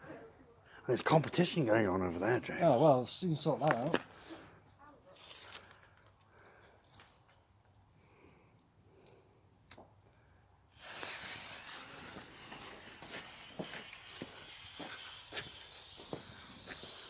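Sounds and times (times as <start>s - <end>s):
firework crackles and pops: 10.7s - 17.0s
firework hissing: 10.7s - 17.0s.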